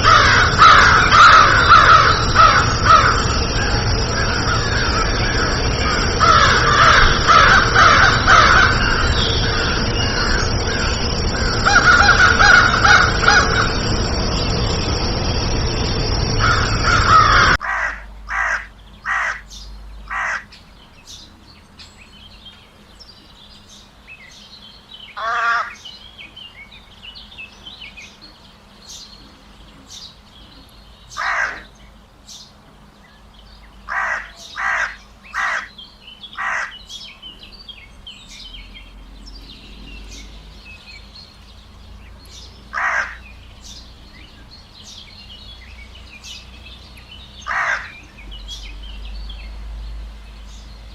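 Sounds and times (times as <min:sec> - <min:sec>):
crows cawing: 0:00.0 - 0:19.5, 0:20.1 - 0:20.6, 0:25.2 - 0:25.8, 0:31.1 - 0:31.7, 0:33.9 - 0:36.9, 0:42.7 - 0:43.4, 0:47.4 - 0:48.2
dense background noise: 0:00.0 - 0:50.9.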